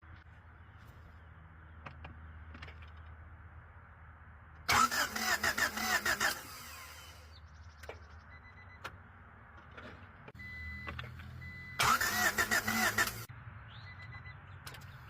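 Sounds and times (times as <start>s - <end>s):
car engine cranking on starter: 4.7s - 7.2s, 11.4s - 13.3s.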